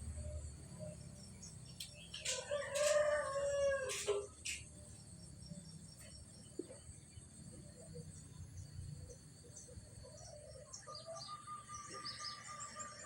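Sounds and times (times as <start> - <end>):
insects chirping: 0.0 - 13.0
rooster crowing: 2.3 - 4.3.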